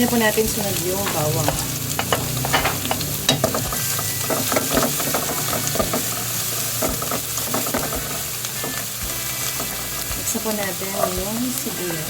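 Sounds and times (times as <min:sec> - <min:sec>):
garlic sizzling in hot oil: 0:00.0 - 0:12.0
utensil scraping a pan: 0:00.5 - 0:12.0.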